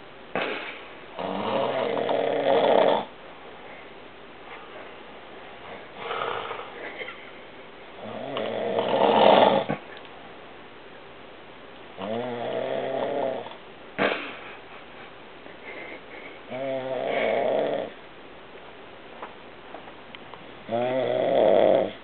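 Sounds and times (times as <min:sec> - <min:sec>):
snoring: 0:01.2 - 0:03.1, 0:06.0 - 0:06.7, 0:08.0 - 0:09.8, 0:12.0 - 0:13.6, 0:16.5 - 0:18.0, 0:20.7 - 0:22.0.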